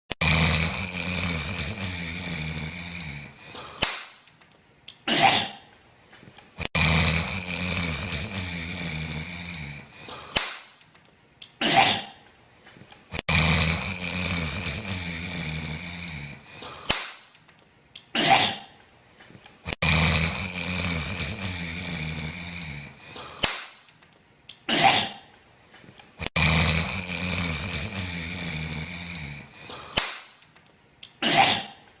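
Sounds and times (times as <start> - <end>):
person snoring loudly: 0.1 - 3.8, 6.6 - 10.4, 13.1 - 16.9, 19.7 - 23.4, 26.2 - 30.0.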